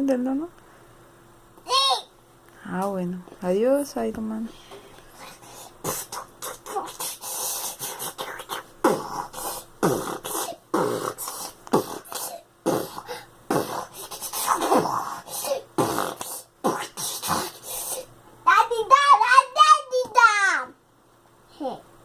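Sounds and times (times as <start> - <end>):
child making mouth sound effects: 5.2 - 18.1.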